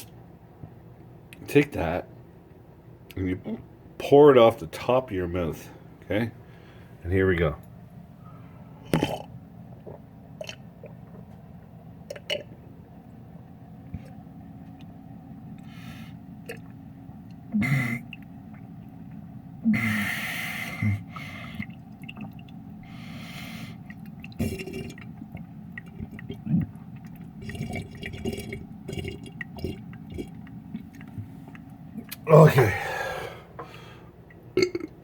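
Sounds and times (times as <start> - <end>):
man gulping and spluttering: 8.9 - 12.6, 13.9 - 14.9, 16.4 - 19.8, 20.8 - 23.0, 23.8 - 35.0.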